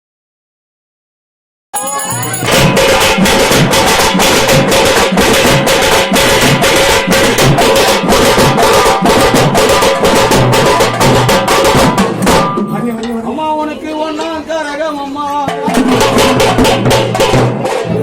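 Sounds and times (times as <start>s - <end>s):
steady held tones: 1.8s - 2.8s
fast drumming: 1.8s - 13.3s, 15.4s - 18.0s.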